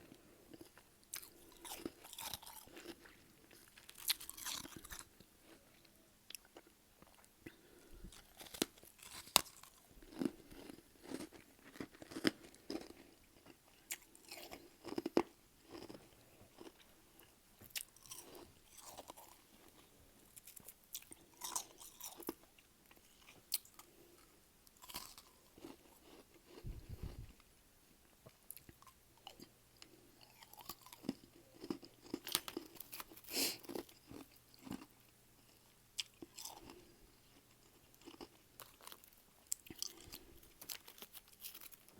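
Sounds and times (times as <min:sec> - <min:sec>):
person crunching frost: 0:39.8 - 0:41.9.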